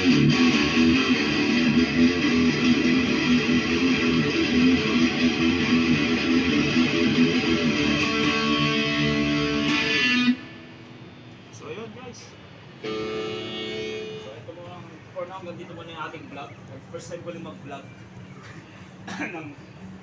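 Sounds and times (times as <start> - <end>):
electric guitar riff: 0.0 - 11.4, 12.7 - 14.5.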